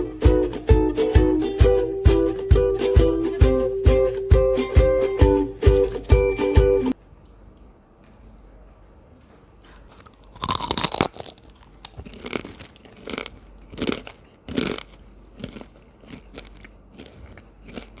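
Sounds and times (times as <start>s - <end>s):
crunchy bite and chewing: 9.8s - 18.0s.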